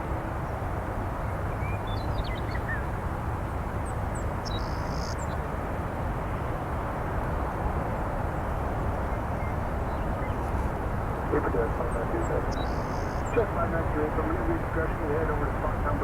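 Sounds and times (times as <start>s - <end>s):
distant jet engines rumbling: 8.5s - 16.0s.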